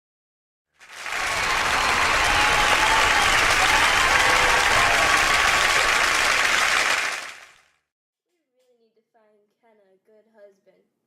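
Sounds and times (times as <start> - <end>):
studio audience applauding: 0.8 - 7.7.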